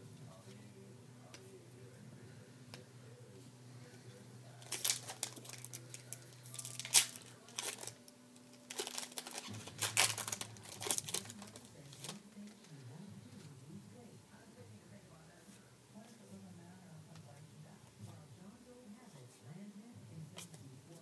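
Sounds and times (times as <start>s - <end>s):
low steady hum: 0.0s - 21.0s
foil wrapper tearing and crinkling: 4.6s - 12.2s.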